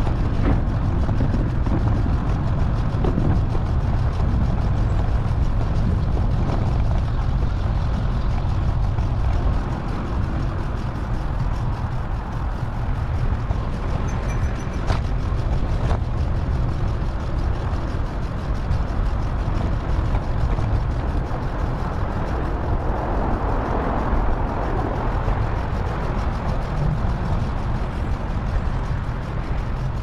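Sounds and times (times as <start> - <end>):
wind and road noise: 0.0 - 30.0
vehicle traffic: 25.2 - 30.0.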